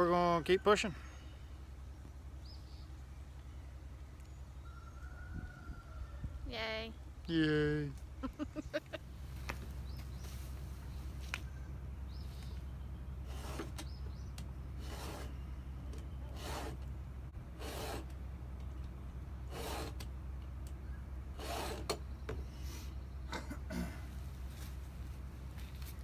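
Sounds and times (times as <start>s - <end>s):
file rasping across chainsaw chain: 16.3s - 16.8s, 17.6s - 18.1s, 21.4s - 22.0s.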